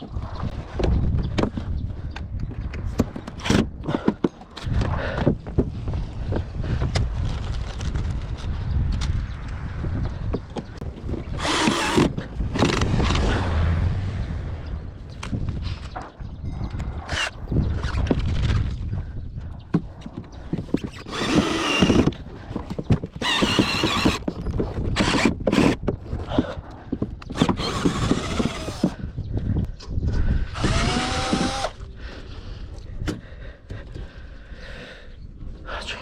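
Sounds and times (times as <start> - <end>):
hand-held power tool running: 11.4 - 13.2, 20.9 - 22.2, 23.2 - 24.3, 25.0 - 25.8, 27.4 - 29.0, 30.6 - 31.8.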